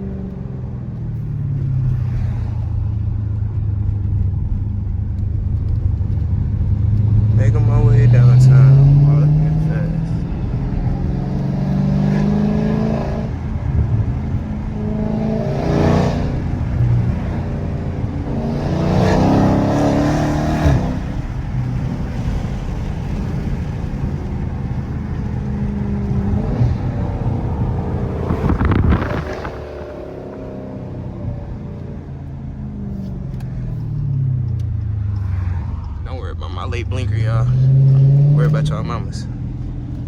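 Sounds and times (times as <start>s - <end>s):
car engine exhaust drone: 0.0s - 40.0s
engine revving hard: 7.3s - 21.3s, 25.8s - 31.0s, 36.2s - 39.3s.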